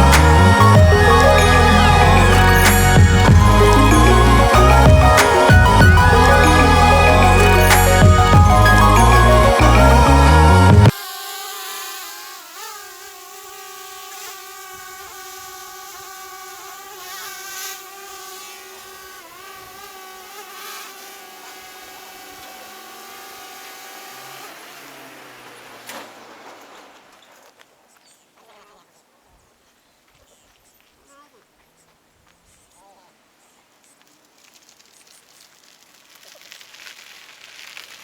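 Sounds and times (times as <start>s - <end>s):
background music: 0.0s - 10.9s
drone motors whining: 0.0s - 27.2s.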